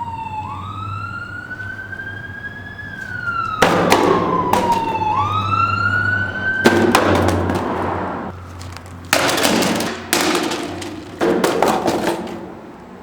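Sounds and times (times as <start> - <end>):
emergency siren wailing: 0.0 - 6.7
sharp bangs: 1.4 - 13.0.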